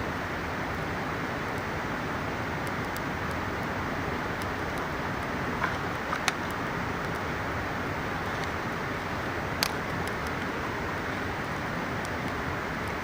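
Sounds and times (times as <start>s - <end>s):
campfire crackling: 0.0s - 13.0s
river rushing: 0.0s - 13.0s
sharp fire pops: 2.6s - 7.3s, 9.5s - 10.6s.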